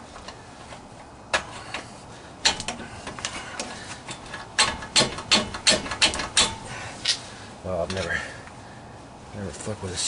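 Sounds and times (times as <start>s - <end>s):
hand tool knocking on metal: 4.6s - 6.6s.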